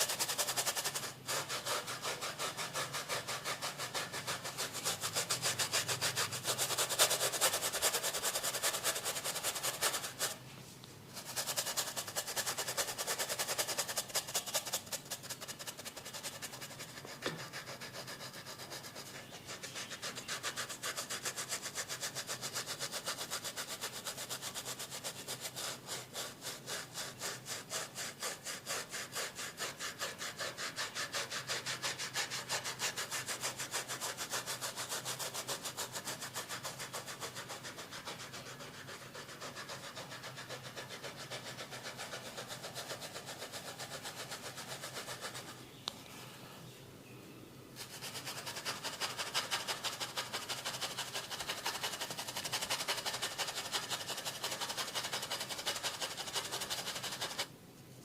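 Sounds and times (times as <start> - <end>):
rhythmic rubbing strokes: 0.0 - 10.4.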